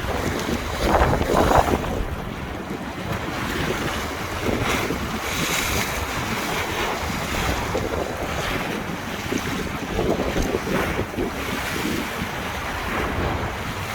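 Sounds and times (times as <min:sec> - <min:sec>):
river water splashing: 0:00.0 - 0:13.9
wind buffeting microphone: 0:00.0 - 0:13.9.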